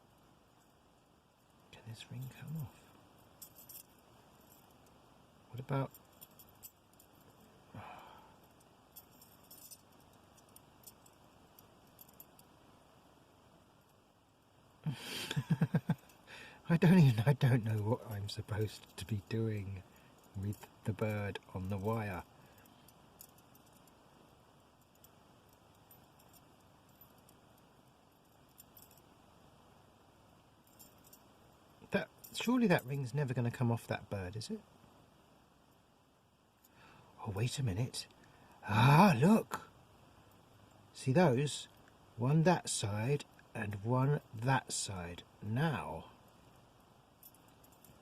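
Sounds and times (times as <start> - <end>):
soft rush of noise: 0.0 - 48.0
metal wire puzzle clinking: 3.4 - 4.9.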